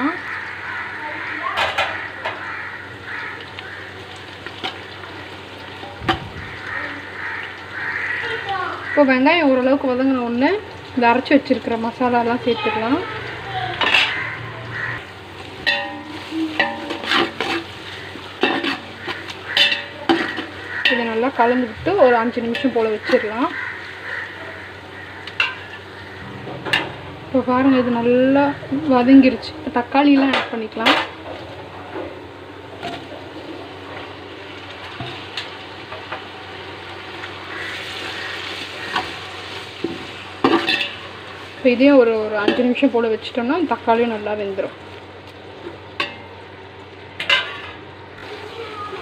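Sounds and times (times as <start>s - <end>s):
food sizzling in a pot: 0.0s - 49.0s
spoon stirring and scraping: 15.6s - 21.0s.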